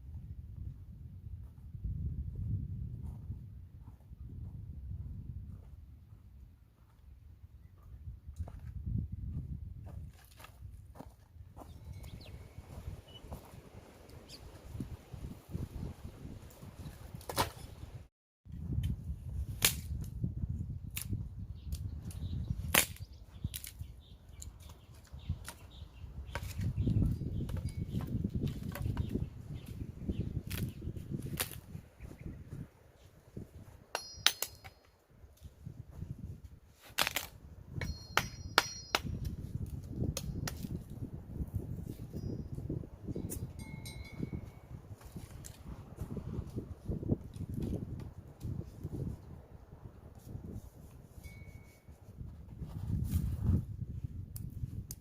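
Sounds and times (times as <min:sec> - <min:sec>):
machete chopping wood: 0:17.2 - 0:17.6, 0:19.6 - 0:19.9, 0:22.7 - 0:23.0, 0:30.5 - 0:31.6, 0:36.9 - 0:37.3
sharp cracks or snaps: 0:22.7 - 0:23.8, 0:30.4 - 0:31.7, 0:36.9 - 0:37.4
metallic ring of blade: 0:34.0 - 0:34.9, 0:37.8 - 0:39.2, 0:43.2 - 0:44.6, 0:51.2 - 0:51.9.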